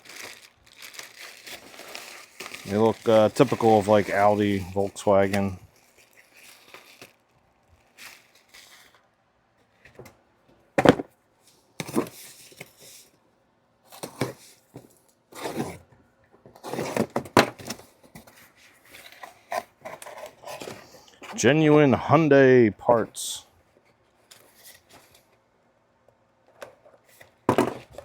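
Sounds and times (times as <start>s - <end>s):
packaging rustling: 0.0s - 9.0s.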